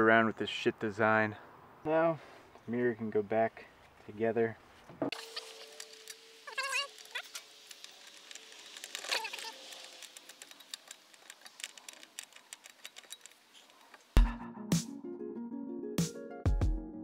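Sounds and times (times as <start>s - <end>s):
plastic and metal parts clicking: 7.0s - 14.1s
electronic music with a beat: 14.2s - 15.1s, 16.0s - 17.0s.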